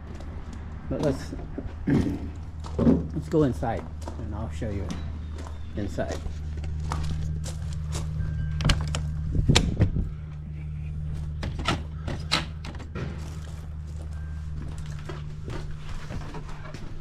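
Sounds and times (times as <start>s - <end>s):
steady low hum: 0.0s - 17.0s
door and step knocks and clunks: 11.4s - 13.5s.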